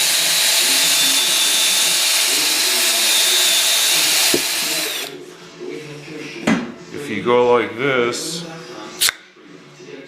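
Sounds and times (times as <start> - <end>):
power drill brush scrubbing pipe: 0.0 - 5.1.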